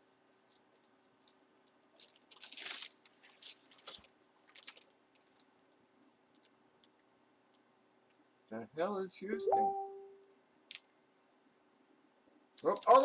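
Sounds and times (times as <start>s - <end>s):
plastic packaging crinkling: 0.5s - 5.6s, 12.6s - 13.0s.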